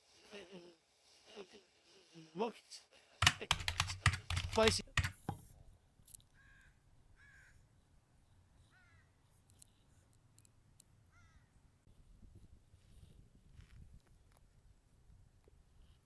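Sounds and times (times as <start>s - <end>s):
crows cawing faintly: 6.2s - 7.8s, 8.6s - 9.2s, 11.1s - 11.6s.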